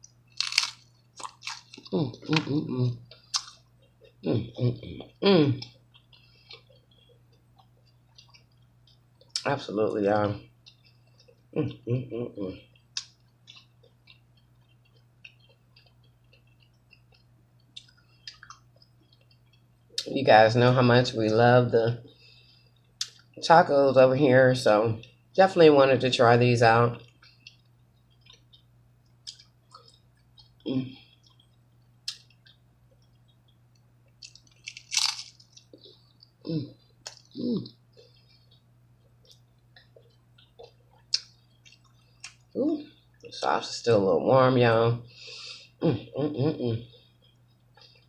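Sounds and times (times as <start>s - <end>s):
chewing and mouth clicks: 0.0s - 9.5s, 10.4s - 20.1s, 22.5s - 23.4s, 27.0s - 43.4s, 46.9s - 48.0s
taco shell crunch: 0.0s - 9.6s, 27.1s - 42.6s
low steady hum: 0.0s - 48.0s
low voice hums: 1.9s - 3.0s, 36.5s - 37.8s, 45.8s - 47.0s.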